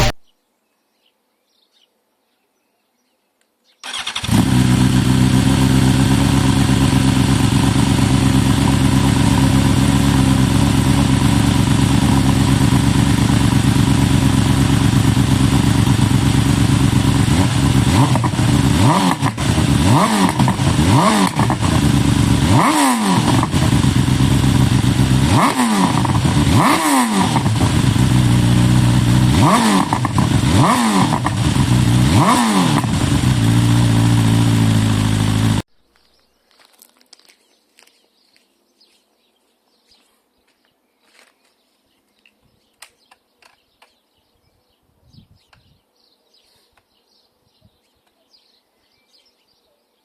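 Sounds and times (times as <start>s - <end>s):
motorcycle engine idling and revving: 3.8s - 35.7s.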